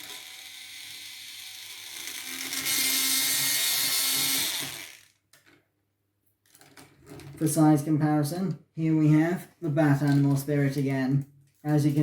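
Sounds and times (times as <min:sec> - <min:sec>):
plastic toy gears whirring: 0:00.0 - 0:05.6.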